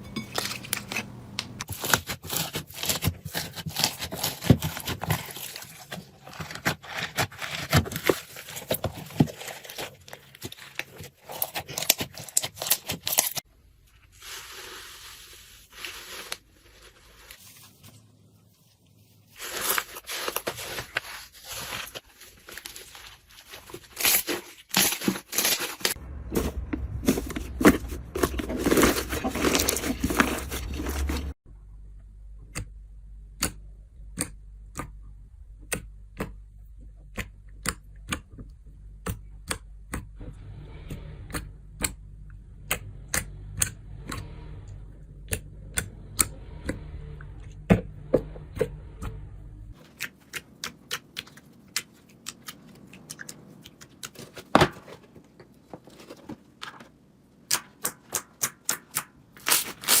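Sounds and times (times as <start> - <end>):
low steady hum: 25.9 - 49.8.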